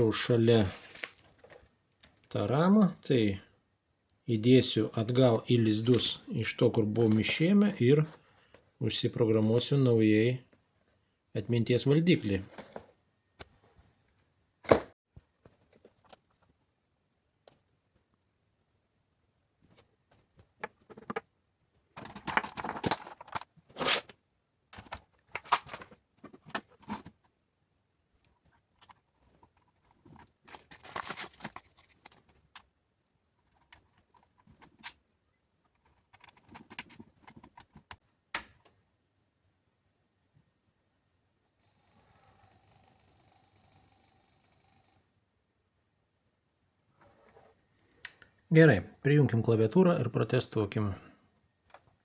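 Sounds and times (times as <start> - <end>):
rustling and scraping: 0.6 - 1.8, 12.4 - 13.9, 19.6 - 21.3, 21.9 - 27.4, 28.3 - 32.7.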